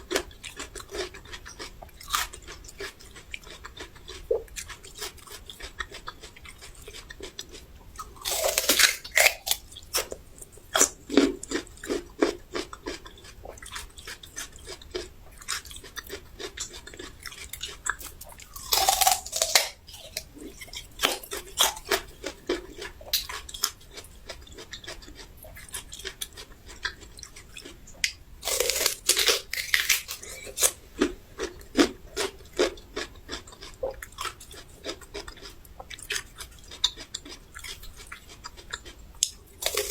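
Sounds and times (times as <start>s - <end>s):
crunching bites of ginger: 0.0s - 39.9s
steady chewing: 0.0s - 39.9s.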